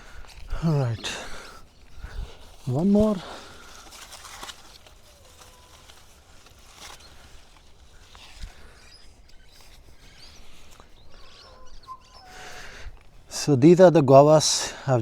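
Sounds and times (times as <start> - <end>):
leaves and branches rustling: 0.0 - 15.0
distant bird whistles: 8.7 - 12.9.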